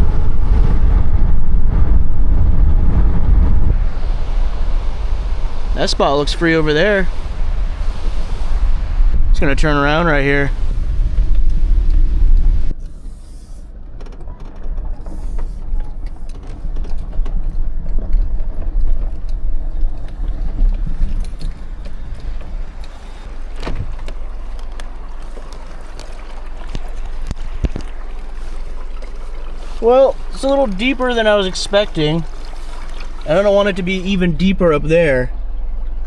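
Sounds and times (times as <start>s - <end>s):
car engine and tyres rumbling: 0.0s - 36.0s
knocks and clunks: 13.7s - 33.4s.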